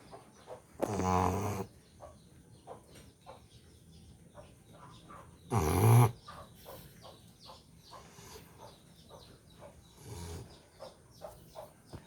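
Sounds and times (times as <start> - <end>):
dog snoring: 0.8 - 1.7, 5.5 - 6.2, 9.9 - 10.6.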